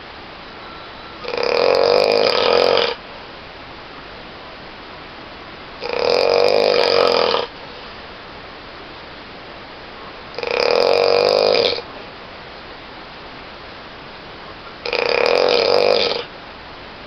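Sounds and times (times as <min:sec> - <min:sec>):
steady hiss: 0:00.0 - 0:17.0
person snoring: 0:01.2 - 0:03.0, 0:05.8 - 0:07.5, 0:10.4 - 0:11.8, 0:14.8 - 0:16.3.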